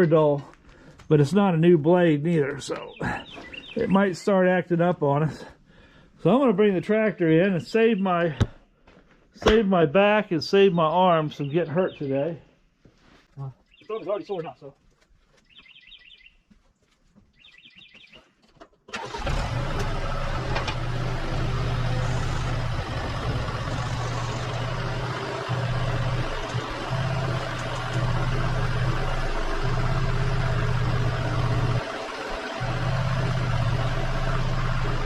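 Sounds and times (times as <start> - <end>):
bird chirping: 2.5 - 4.4, 10.6 - 12.5, 13.5 - 14.7, 15.4 - 16.5, 17.3 - 18.4, 23.5 - 28.3
engine running with low hum: 19.0 - 35.0.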